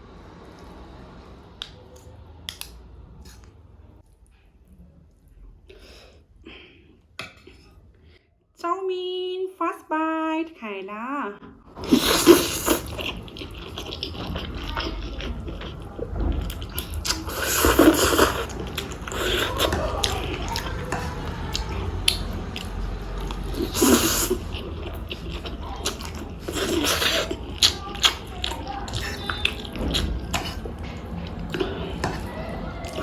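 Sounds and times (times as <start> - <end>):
chewing with mouth clicks: 1.6 - 5.4, 11.8 - 33.0
loud bursts of eating noise: 11.8 - 33.0.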